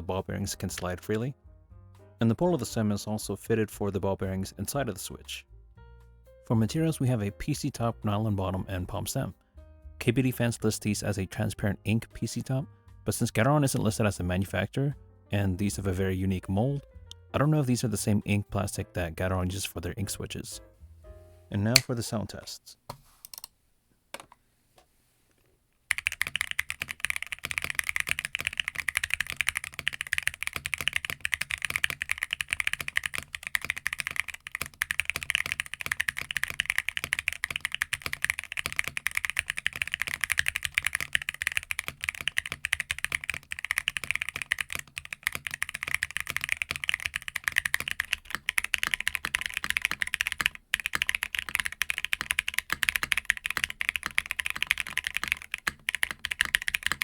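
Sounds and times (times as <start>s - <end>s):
mechanical keyboard typing: 25.9s - 57.0s.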